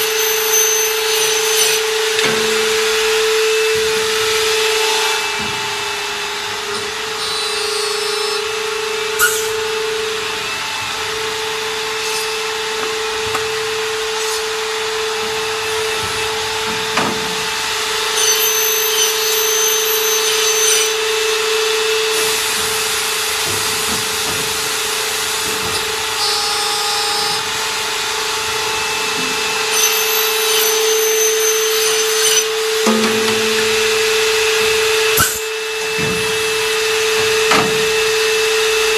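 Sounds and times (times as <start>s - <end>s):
high-pitched machine whine: 0.0s - 38.9s
machine hum with whine: 0.0s - 38.9s
sharp knocks: 32.8s - 36.5s.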